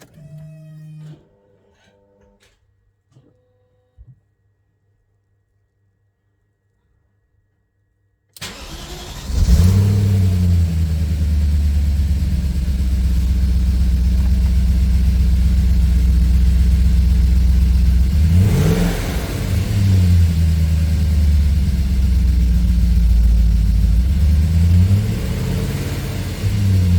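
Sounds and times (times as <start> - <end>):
car engine idling and revving: 8.4 - 26.9.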